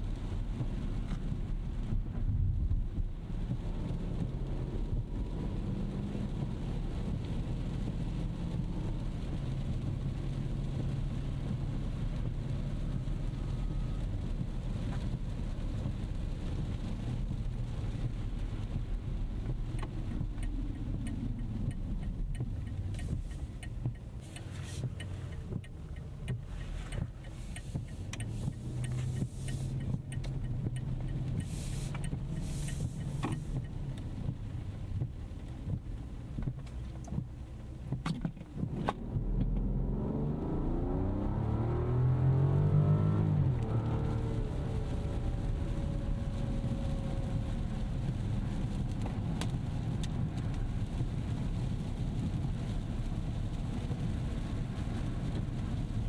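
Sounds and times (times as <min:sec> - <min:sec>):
quiet car engine: 0:00.0 - 0:56.0
road and tyre rumble: 0:00.0 - 0:56.0
short sharp hissing ticks: 0:22.4 - 0:33.8.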